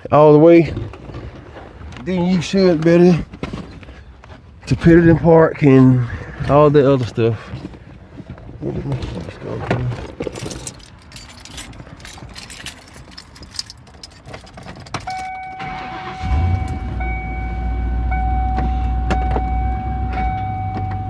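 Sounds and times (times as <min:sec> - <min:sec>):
car engine starting and rumbling: 0:08.9 - 0:21.0
keys jangling in ignition: 0:09.0 - 0:16.9
steady warning tone: 0:15.1 - 0:21.0.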